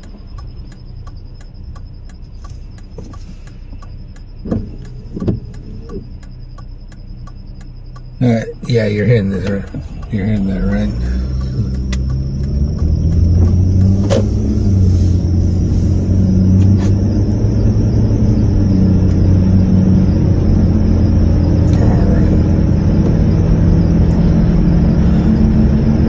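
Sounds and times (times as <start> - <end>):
car engine and road rumble: 0.0 - 26.0.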